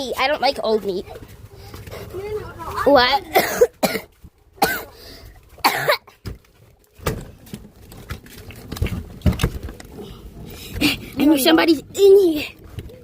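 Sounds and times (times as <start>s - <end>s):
person coughing: 3.3s - 5.0s, 5.6s - 6.2s.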